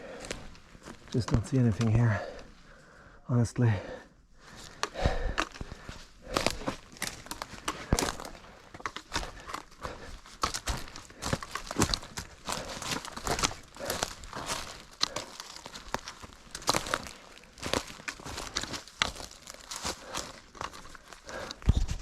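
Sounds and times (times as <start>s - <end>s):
brushing through undergrowth: 5.8s - 22.0s
footsteps crunching through dry leaves: 6.0s - 22.0s.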